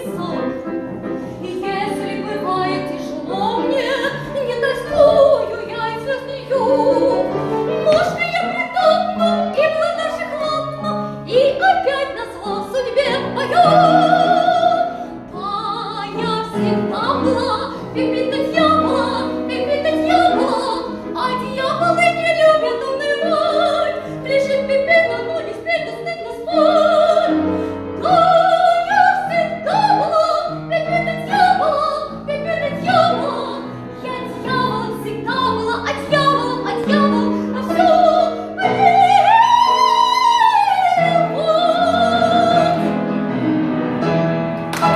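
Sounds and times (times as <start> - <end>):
woman singing operatically: 1.4 - 27.4, 28.0 - 42.9
instrumental accompaniment: 42.2 - 44.9.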